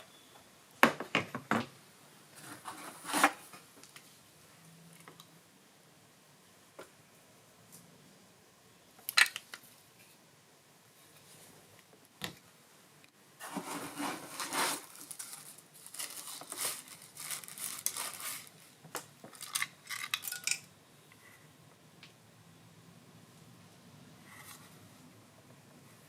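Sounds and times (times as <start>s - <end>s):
packaging rustling: 13.4s - 18.7s.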